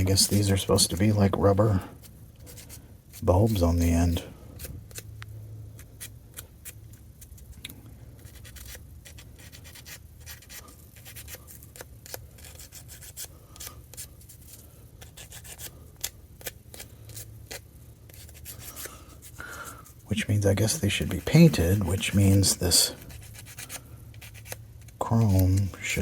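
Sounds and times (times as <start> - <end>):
low steady hum: 0.0 - 26.0
plastic parts rubbing and scraping: 8.2 - 26.0.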